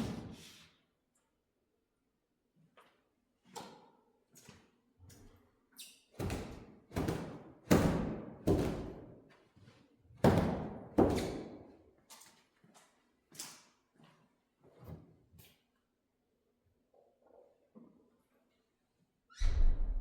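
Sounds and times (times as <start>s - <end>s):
loud reverberant thuds: 19.4s - 20.0s.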